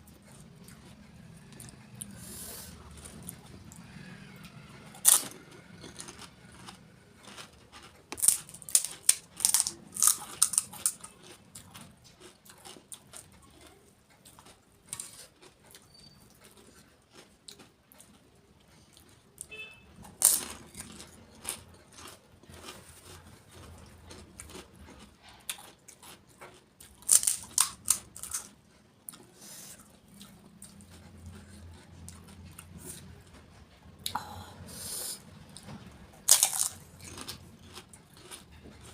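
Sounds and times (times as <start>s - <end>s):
faint chewing: 0.0s - 38.9s
crisp shells crunching: 5.0s - 11.4s, 20.2s - 23.2s, 26.9s - 28.5s, 36.2s - 38.4s.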